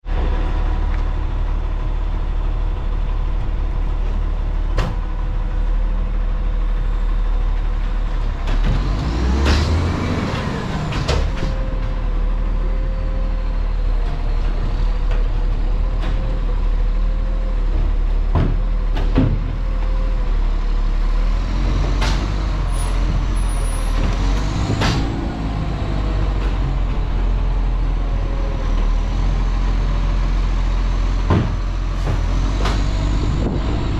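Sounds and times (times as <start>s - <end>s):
garbage truck engine running: 0.0s - 33.9s
sharp knocks and clanks: 8.4s - 12.0s, 17.7s - 20.0s, 21.9s - 25.3s, 31.2s - 33.6s.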